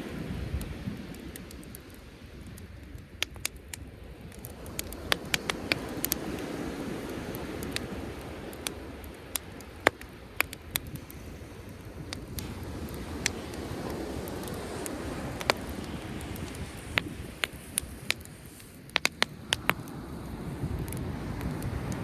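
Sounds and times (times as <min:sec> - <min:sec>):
campfire crackling and popping: 0:00.0 - 0:22.0
sea waves rushing: 0:04.5 - 0:22.0.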